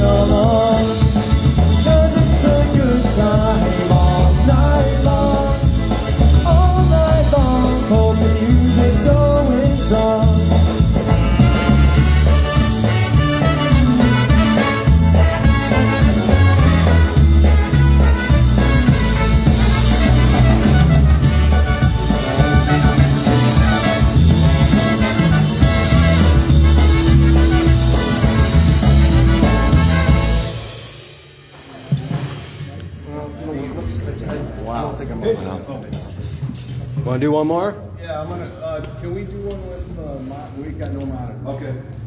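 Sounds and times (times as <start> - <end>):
polka band with brass: 0.0 - 32.6.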